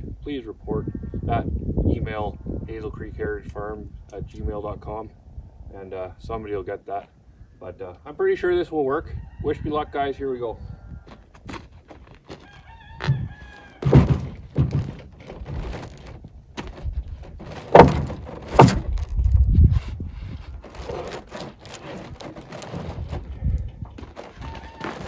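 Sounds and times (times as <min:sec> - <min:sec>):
heavy wooden knocks and thuds: 0:11.1 - 0:25.0
scraping on truck bed: 0:11.1 - 0:25.0
sharp loud knocks: 0:13.0 - 0:19.1.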